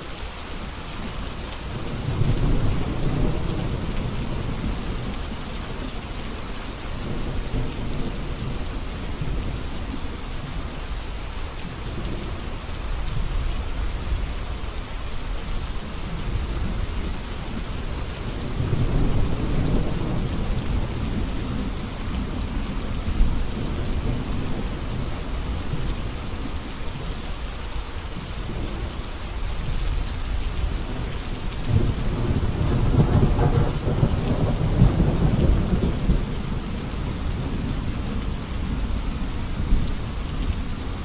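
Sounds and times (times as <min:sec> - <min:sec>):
steady rain: 0:00.0 - 0:41.0
low rolling thunder: 0:01.7 - 0:06.1, 0:15.8 - 0:26.5, 0:29.5 - 0:41.0.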